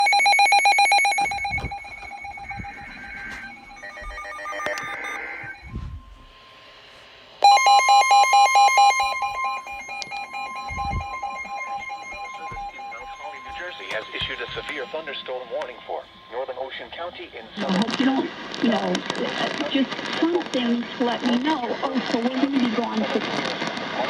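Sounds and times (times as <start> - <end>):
pulsing two-pitch alert tone: 7.4 - 17.1.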